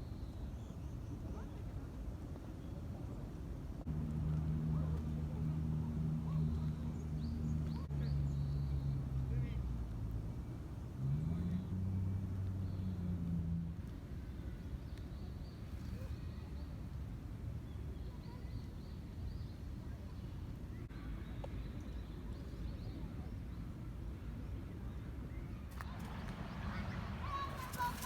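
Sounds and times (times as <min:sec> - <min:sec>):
low rumble of background noise: 0:00.0 - 0:28.0.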